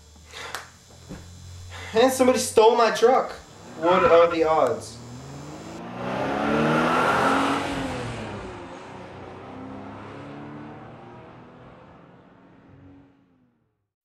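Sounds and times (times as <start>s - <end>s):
truck engine accelerating past: 4.9s - 13.5s.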